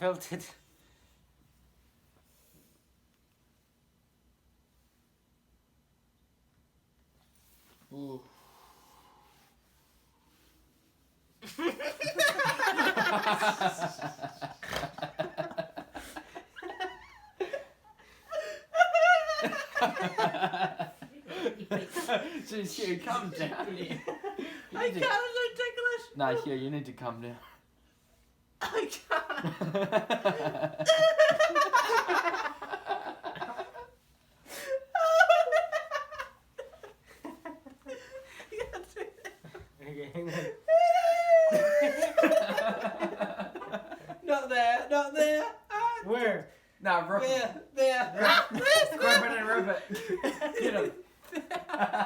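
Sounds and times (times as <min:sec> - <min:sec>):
man laughing: 0:11.4 - 0:17.7, 0:18.5 - 0:24.9, 0:38.5 - 0:44.0
person laughing: 0:11.5 - 0:17.7.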